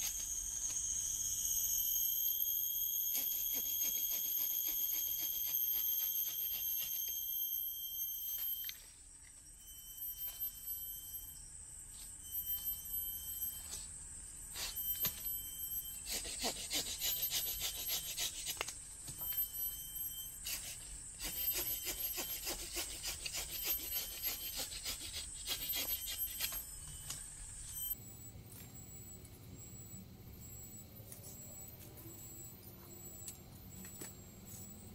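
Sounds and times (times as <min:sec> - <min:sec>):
steady high-pitched hum: 0:00.0 - 0:34.9
hand tool rasping wood: 0:16.0 - 0:18.7, 0:20.4 - 0:26.6.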